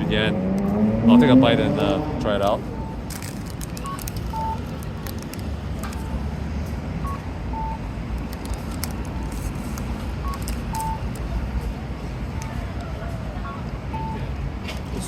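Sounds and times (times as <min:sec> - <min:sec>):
low traffic rumble: 0:00.0 - 0:15.0
short electronic beeps: 0:03.8 - 0:04.6, 0:10.2 - 0:11.0.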